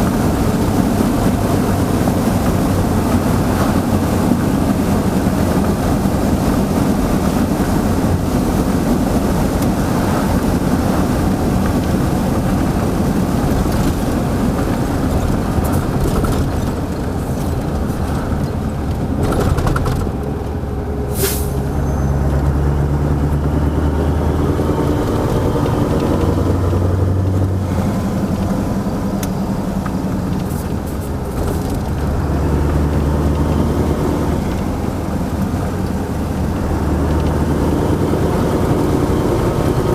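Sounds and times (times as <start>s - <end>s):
truck diesel engine running: 0.0s - 39.9s
compressed air hiss: 21.1s - 21.6s.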